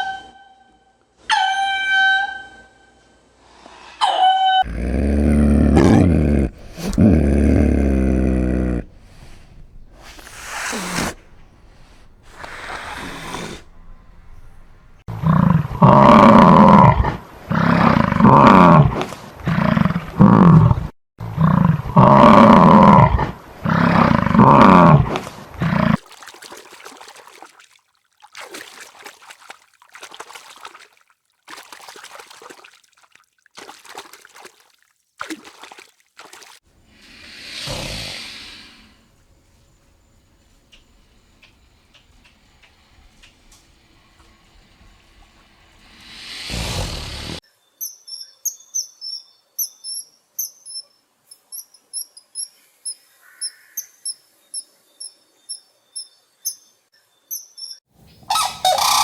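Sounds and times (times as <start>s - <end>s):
large animal calling loudly: 58.3s - 59.0s.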